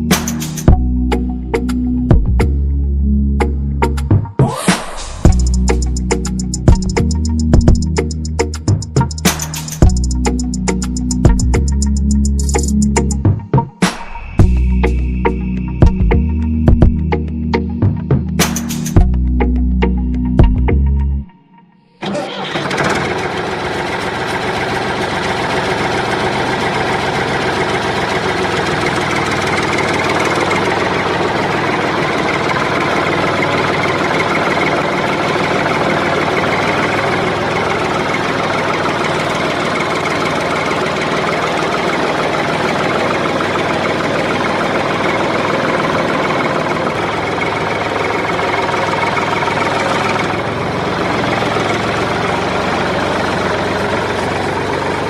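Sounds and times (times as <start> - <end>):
small tractor engine chugging: 5.2 - 13.2, 22.0 - 55.0.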